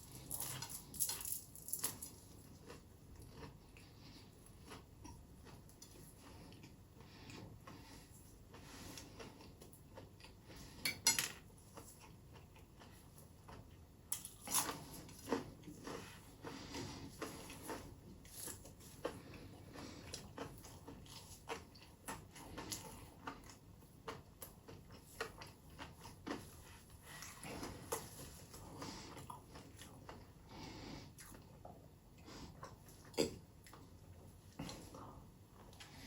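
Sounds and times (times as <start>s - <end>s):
cutlery clinking against dishes: 10.8s - 11.4s.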